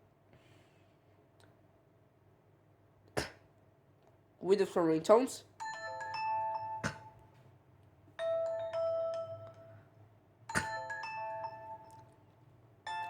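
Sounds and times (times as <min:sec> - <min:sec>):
bell-like phone chime melodies: 0:05.6 - 0:07.2, 0:08.2 - 0:09.9, 0:10.5 - 0:12.1.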